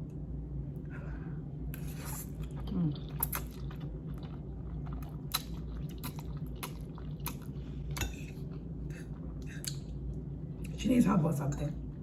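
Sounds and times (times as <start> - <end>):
steady low hum: 0.0 - 12.0
chewing noodles: 1.8 - 10.0.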